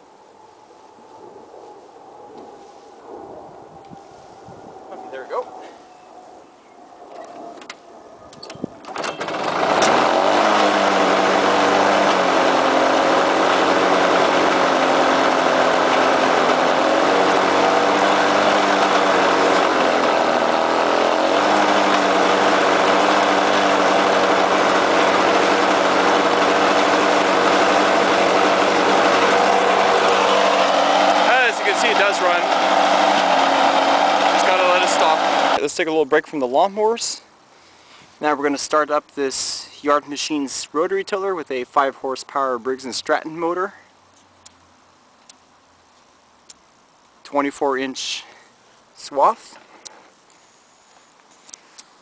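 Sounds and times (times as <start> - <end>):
lawn mower engine running: 8.8 - 35.6.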